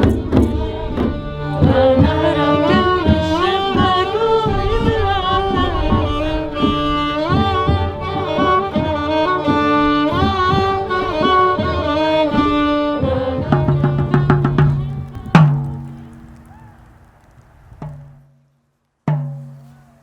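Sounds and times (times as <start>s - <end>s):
bowed string melody: 0.0s - 16.4s
percussion: 0.0s - 16.6s.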